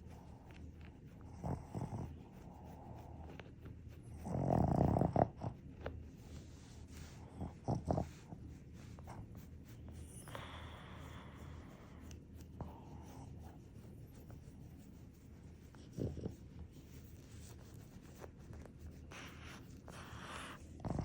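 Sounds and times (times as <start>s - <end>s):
hand stroking dog fur: 0.0s - 21.0s
dog snorting: 1.2s - 14.9s, 15.5s - 21.0s
dog breathy puff: 19.0s - 21.0s.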